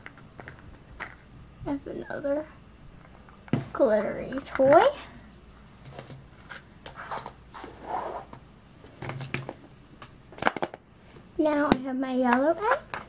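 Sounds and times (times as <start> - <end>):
plastic toys clicking and rustling: 3.3 - 4.9.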